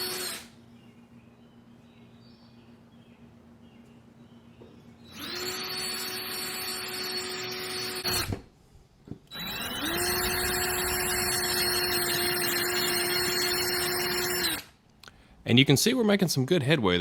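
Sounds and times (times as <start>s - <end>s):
electric drill drilling: 0.0s - 0.5s, 5.1s - 8.4s, 9.3s - 14.8s.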